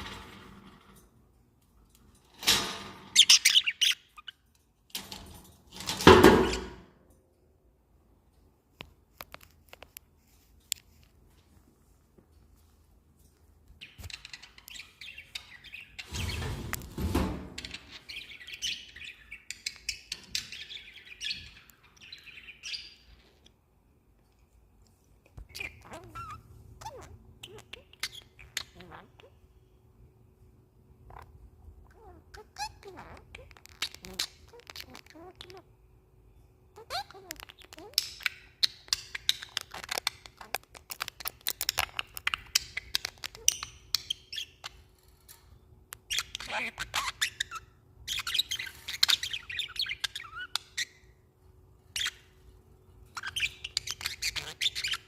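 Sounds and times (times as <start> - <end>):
budgies chattering: 25.5 - 29.3, 31.9 - 35.7, 36.8 - 44.8, 46.0 - 51.1, 53.1 - 55.0.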